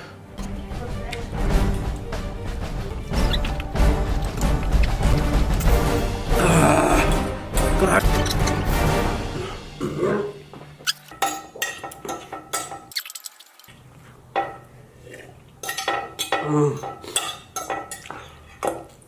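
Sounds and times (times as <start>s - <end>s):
utensils clinking against a dish: 10.8s - 13.8s, 15.6s - 19.0s.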